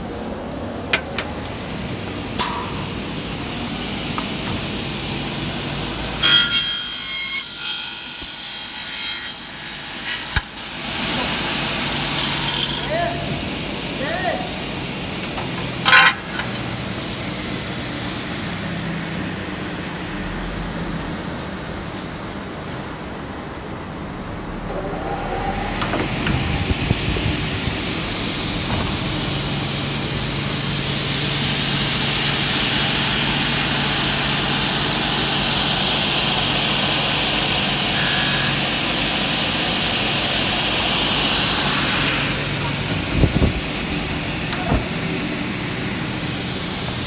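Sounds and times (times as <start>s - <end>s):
cutting saw running: 3.9s - 15.2s, 24.7s - 47.0s.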